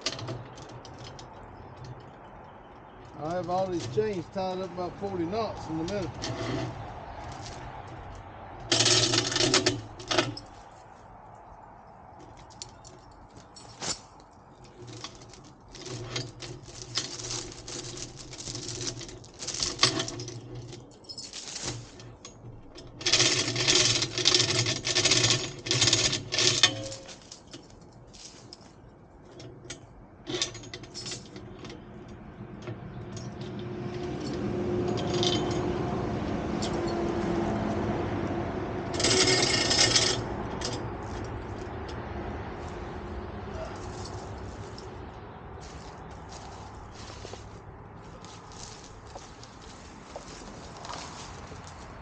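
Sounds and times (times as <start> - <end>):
metal chains clanking: 0.0 - 10.7, 12.2 - 32.2, 33.0 - 38.0, 38.8 - 52.0
steady mechanical noise: 0.0 - 52.0.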